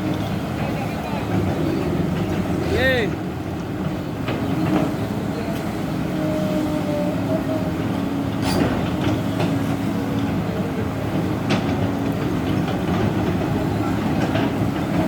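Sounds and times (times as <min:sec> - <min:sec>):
excavator diesel engine droning: 0:00.0 - 0:15.0.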